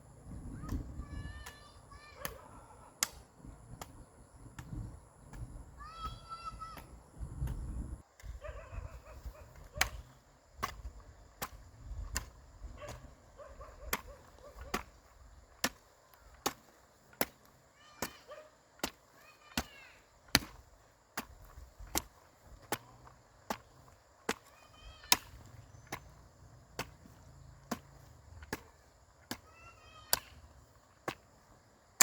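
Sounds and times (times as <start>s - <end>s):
sharp chopping strikes: 3.0s - 3.9s, 9.8s - 12.3s, 14.7s - 18.2s, 18.8s - 20.6s, 25.1s - 30.4s.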